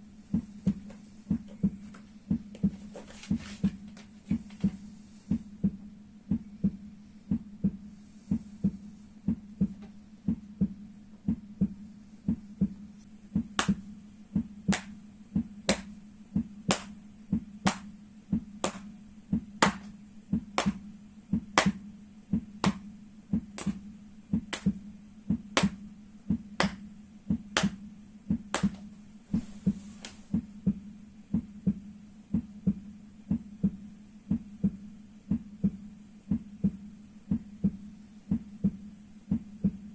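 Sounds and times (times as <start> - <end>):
heartbeat: 0.0 - 39.9
slaps on feet: 13.4 - 13.8, 14.7 - 15.0, 15.7 - 15.9, 16.7 - 16.9, 17.6 - 17.9, 18.6 - 18.9, 19.6 - 19.9, 20.6 - 20.8, 21.4 - 21.8, 22.6 - 22.8, 23.4 - 23.8, 24.4 - 25.8, 26.6 - 28.9.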